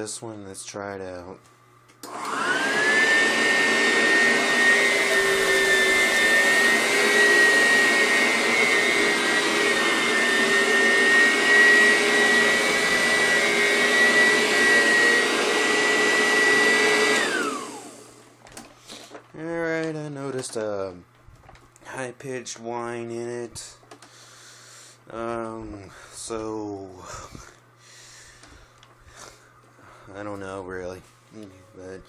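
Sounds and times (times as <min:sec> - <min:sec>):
vacuum motor winding down: 0:02.0 - 0:18.3
upright vacuum cleaner whining: 0:02.0 - 0:19.3.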